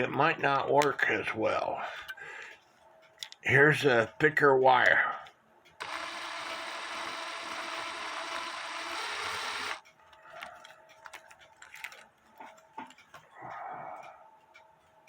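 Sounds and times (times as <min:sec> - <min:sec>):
cordless drill running: 0:05.8 - 0:09.8
light clicks and taps: 0:09.8 - 0:13.3.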